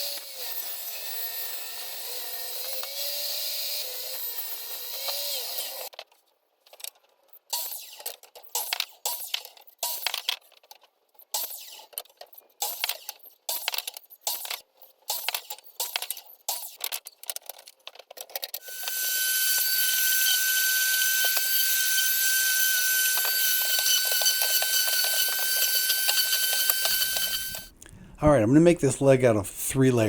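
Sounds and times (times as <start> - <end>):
power saw whining while cutting: 0.0 - 5.9, 18.6 - 27.7.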